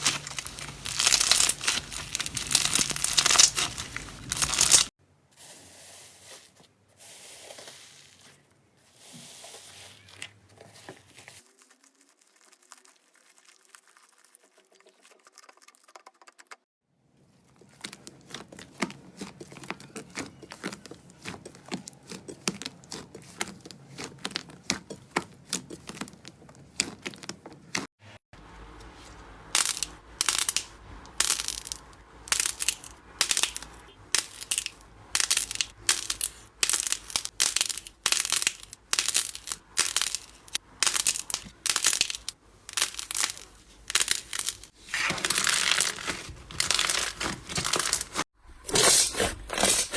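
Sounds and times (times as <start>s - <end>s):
slime squeezed crackling and popping: 0.0s - 4.9s.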